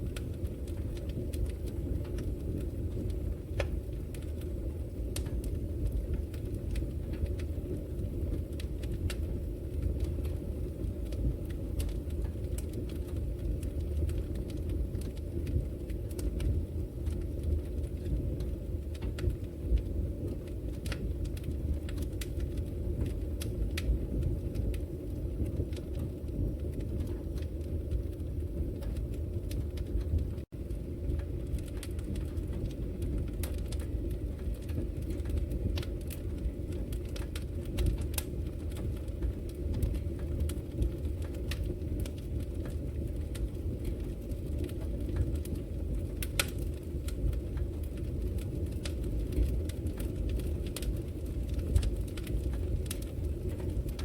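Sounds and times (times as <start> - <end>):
fire crackling and popping: 0.0 - 54.0
fire flames roaring: 0.0 - 54.0.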